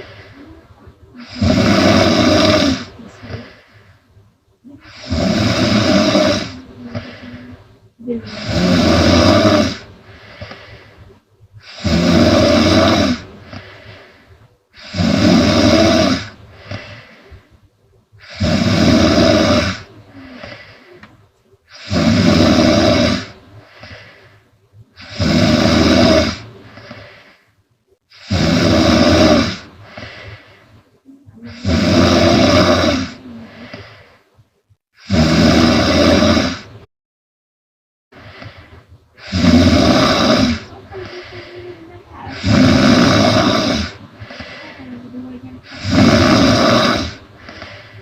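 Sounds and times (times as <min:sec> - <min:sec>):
woman snoring loudly: 0:01.2 - 0:03.7, 0:04.8 - 0:10.6, 0:11.6 - 0:14.0, 0:14.7 - 0:17.2, 0:18.2 - 0:21.1, 0:21.7 - 0:24.2, 0:25.0 - 0:27.2, 0:28.1 - 0:30.5, 0:31.4 - 0:34.0, 0:35.0 - 0:36.8, 0:39.2 - 0:48.0
soft breath out: 0:02.9 - 0:04.1, 0:06.5 - 0:08.4, 0:09.8 - 0:11.2, 0:16.5 - 0:17.6, 0:19.9 - 0:21.2, 0:33.2 - 0:34.3, 0:40.4 - 0:42.6, 0:44.1 - 0:45.8, 0:47.4 - 0:48.0.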